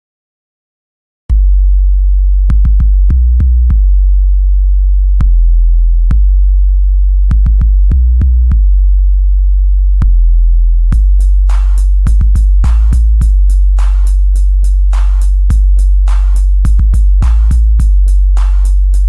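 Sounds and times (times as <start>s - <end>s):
deep bass notes: 1.3s - 19.0s
drums and hi-hats: 2.5s - 3.1s, 7.3s - 7.7s, 11.0s - 19.0s.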